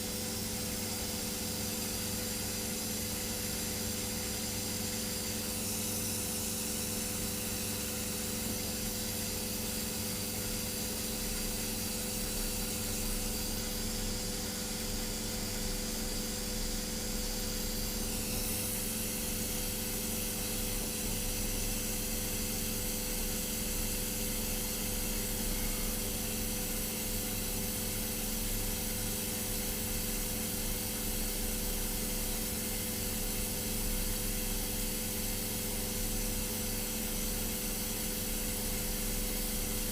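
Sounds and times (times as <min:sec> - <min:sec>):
electrical hum: 0:03.7 - 0:28.3
soldering torch hissing: 0:15.6 - 0:23.9.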